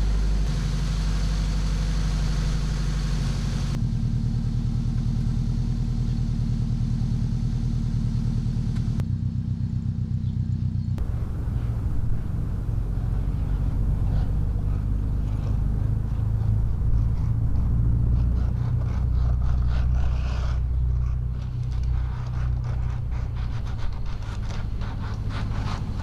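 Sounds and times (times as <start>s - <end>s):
car engine running: 11.0s - 26.0s
quick scraping and clicking: 11.0s - 26.0s.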